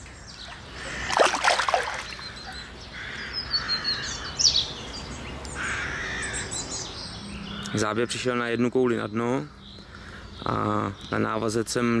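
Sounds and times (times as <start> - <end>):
outdoor background noise: 0.0 - 12.0
small birds chirping: 0.0 - 12.0.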